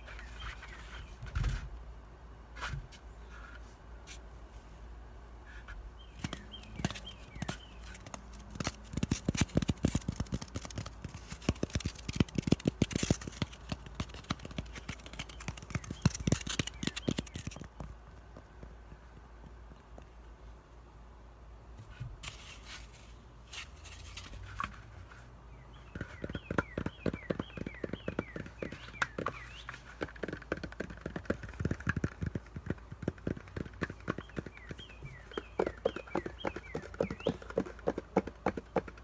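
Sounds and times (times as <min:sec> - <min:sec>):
fingers tapping on floral foam: 0:06.2 - 0:20.1, 0:25.8 - 0:39.0.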